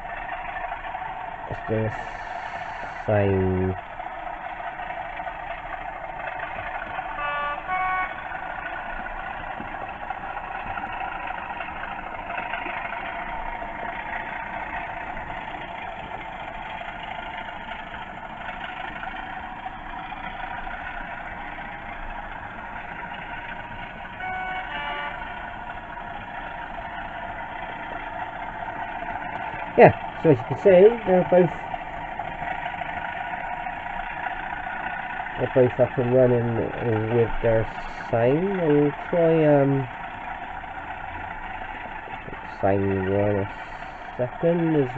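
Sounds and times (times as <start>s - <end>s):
diesel engine sound from speakers: 0.0s - 44.9s
two-note horn: 7.2s - 8.2s, 24.2s - 25.3s.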